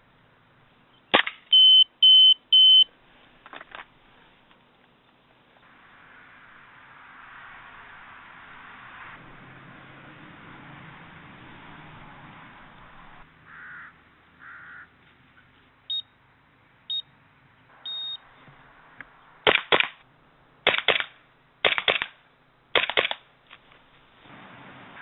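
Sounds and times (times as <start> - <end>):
airsoft gun shots: 1.1 - 1.5, 19.4 - 20.0, 20.6 - 22.2, 22.8 - 23.2
electronic beeps: 1.5 - 2.9, 17.8 - 18.2.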